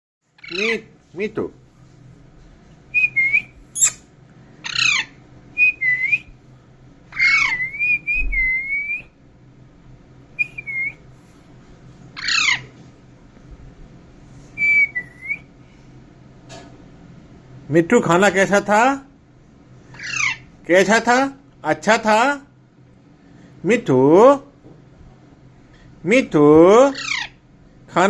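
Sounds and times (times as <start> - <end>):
parakeet whistled calls: 0.4 - 0.7, 2.9 - 4.0, 4.6 - 6.3, 7.1 - 9.1, 10.4 - 11.0, 12.2 - 12.7, 14.6 - 15.4, 20.0 - 20.5, 27.0 - 27.3
parakeet harsh screeches: 0.4 - 0.8, 3.8 - 4.0, 4.6 - 5.2, 7.1 - 7.9, 12.2 - 12.7, 19.9 - 20.5, 26.9 - 27.4.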